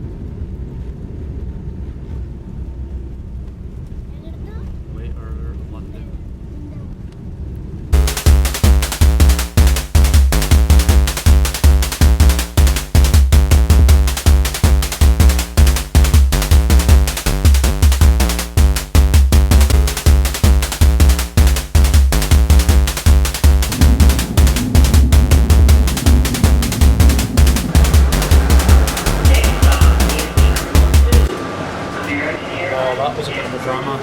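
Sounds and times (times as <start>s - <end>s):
electronic music with drum machine: 8.0s - 31.3s.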